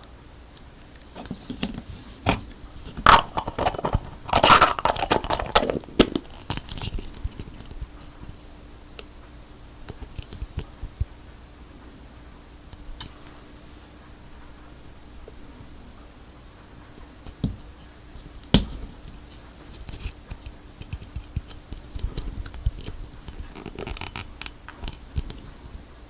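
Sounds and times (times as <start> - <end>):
plastic being torn and crumpled: 2.9 - 7.6, 22.8 - 24.5.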